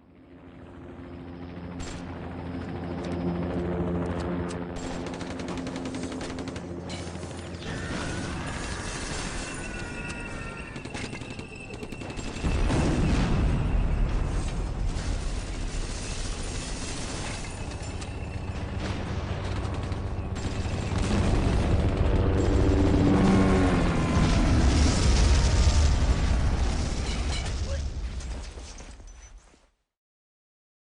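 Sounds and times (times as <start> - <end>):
crackling bangs: 10.6 - 29.0
deep loud rumble: 21.0 - 27.1.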